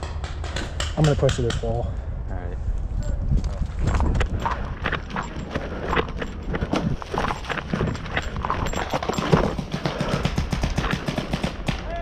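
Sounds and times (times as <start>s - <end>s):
footsteps running over rough ground: 2.9s - 11.8s.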